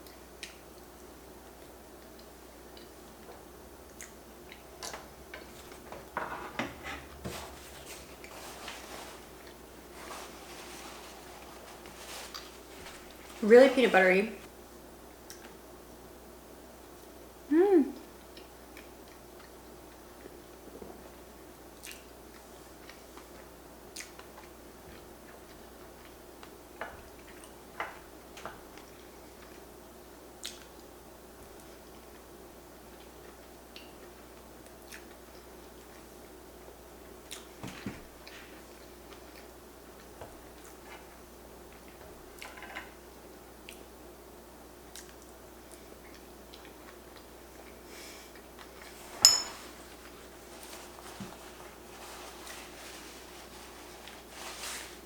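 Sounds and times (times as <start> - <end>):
person chewing food: 0.0 - 6.0, 11.1 - 13.2, 21.8 - 24.6, 44.9 - 49.0
soft chewing: 0.0 - 6.1, 6.9 - 13.4, 15.2 - 15.6, 18.0 - 37.6, 38.2 - 44.0, 44.8 - 49.1.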